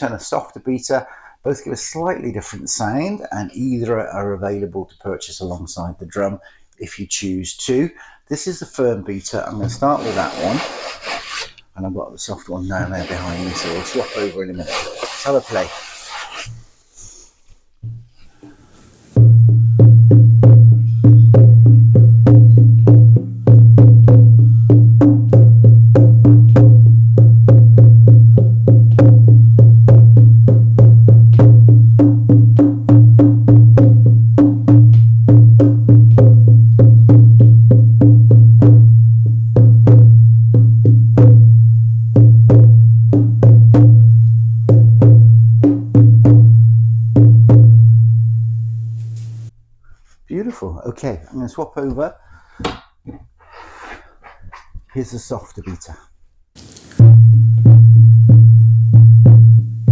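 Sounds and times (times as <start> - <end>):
frame drum booming: 19.2 - 39.0, 57.0 - 59.9.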